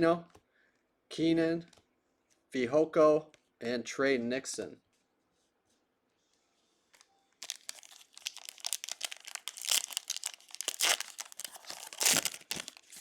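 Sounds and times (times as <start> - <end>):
card pack wrapper crinkling and tearing: 7.4 - 13.0.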